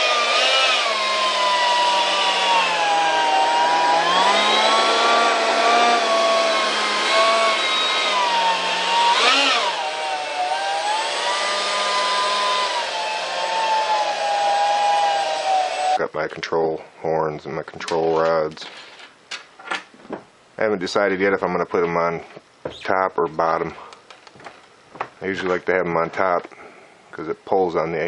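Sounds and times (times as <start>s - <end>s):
electric fan whine: 0.0s - 16.0s.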